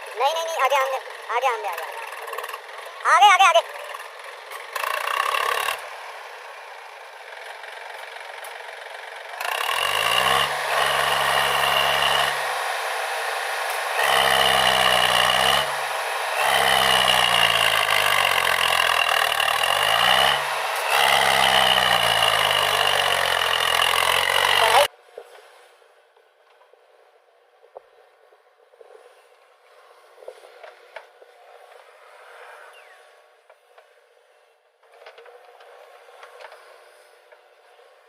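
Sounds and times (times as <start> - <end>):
diesel engine revving: 0.0 - 24.9.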